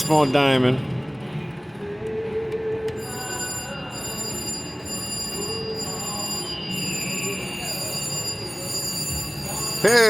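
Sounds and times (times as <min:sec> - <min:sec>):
casino crowd hubbub: 0:00.0 - 0:10.0
electronic slot machine tones: 0:03.0 - 0:10.0.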